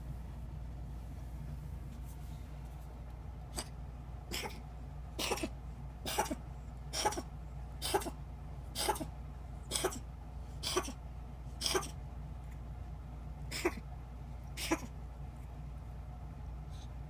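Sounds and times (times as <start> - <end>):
kitten coughing: 3.5 - 12.0, 13.5 - 13.9, 14.5 - 15.0.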